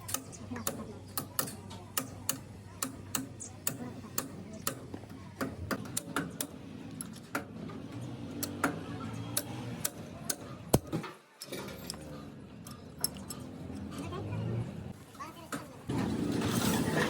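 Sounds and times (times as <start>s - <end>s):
small metal parts clicking: 11.4s - 14.1s.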